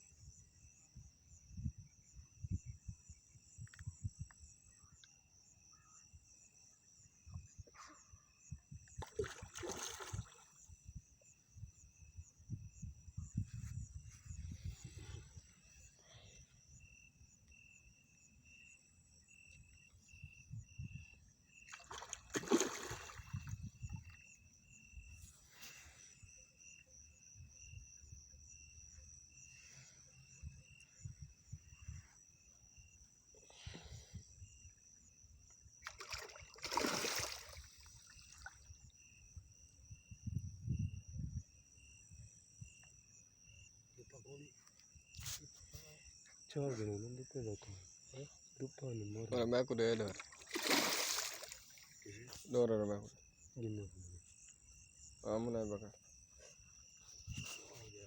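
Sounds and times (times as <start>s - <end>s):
crickets chirping: 0.0s - 58.0s
water splash: 9.0s - 10.5s, 21.7s - 23.5s, 35.8s - 38.5s, 50.1s - 51.8s.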